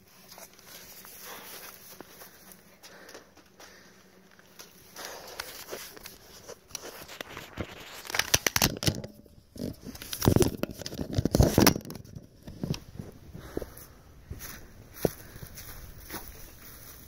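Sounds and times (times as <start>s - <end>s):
footsteps crunching and rustling: 0.0s - 8.3s, 9.6s - 17.0s
crackling: 0.1s - 17.0s.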